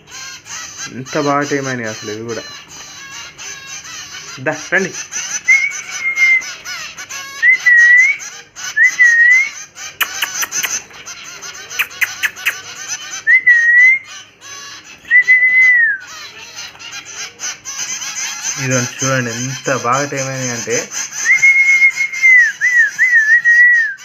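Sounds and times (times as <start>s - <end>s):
small cage birds chirping: 0.0s - 24.0s
sharp clicks: 10.0s - 10.9s, 11.8s - 12.6s
person whistling: 21.3s - 24.0s.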